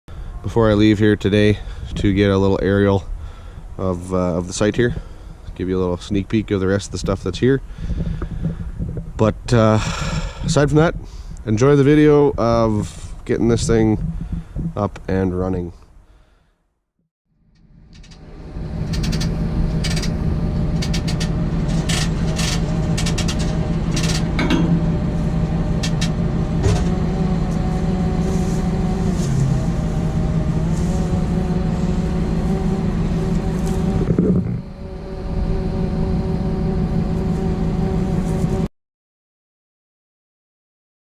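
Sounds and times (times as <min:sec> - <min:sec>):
excavator engine running: 0:06.4 - 0:15.1, 0:17.4 - 0:38.7
sharp metallic clicks and knocks: 0:18.8 - 0:20.2, 0:20.8 - 0:24.8.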